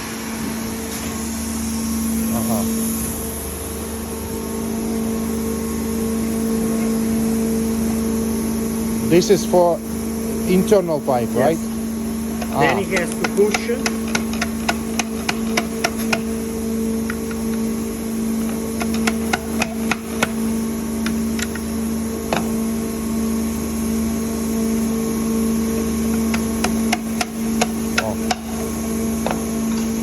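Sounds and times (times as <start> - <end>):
low machine hum: 0.0 - 30.0
parts clicking and knocking: 12.4 - 16.3, 18.4 - 20.4, 21.0 - 21.7, 26.1 - 30.0.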